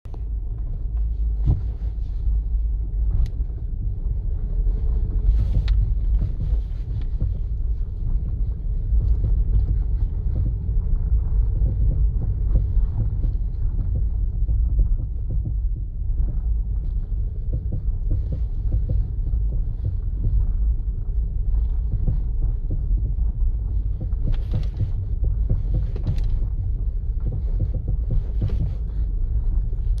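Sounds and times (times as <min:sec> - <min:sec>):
car road rumble: 0:00.0 - 0:30.0
suspension knocks: 0:09.0 - 0:30.0.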